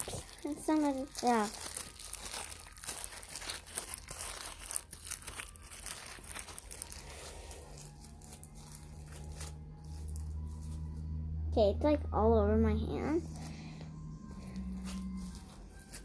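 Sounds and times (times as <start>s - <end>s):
slime crackling and snapping: 0.0s - 10.7s
low steady hum: 0.0s - 16.0s.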